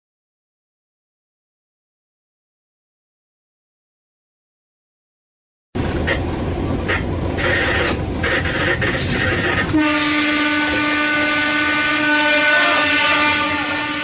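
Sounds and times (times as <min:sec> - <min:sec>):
train passing: 0:05.8 - 0:14.0
train horn blast: 0:09.2 - 0:14.0.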